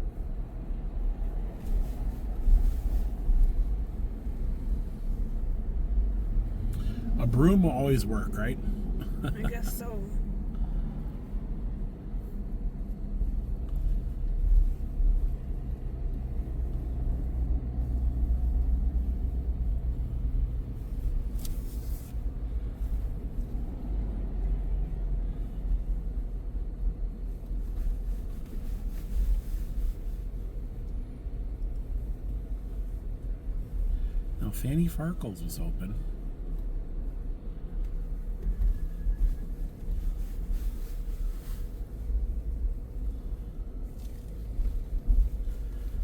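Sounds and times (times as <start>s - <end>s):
car engine and tyre rumble: 0.0s - 46.0s.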